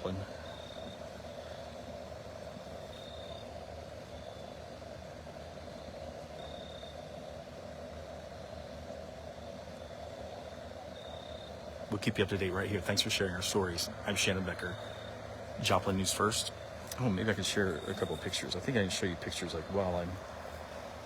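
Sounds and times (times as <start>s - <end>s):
engine-like hum and rumble: 0.0s - 21.0s.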